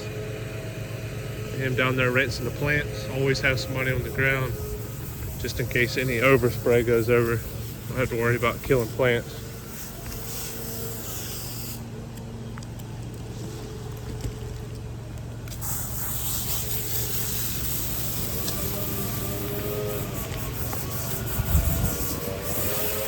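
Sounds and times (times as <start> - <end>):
low engine hum: 0.0 - 23.0
water spraying from a hose: 1.6 - 12.4, 13.2 - 23.0.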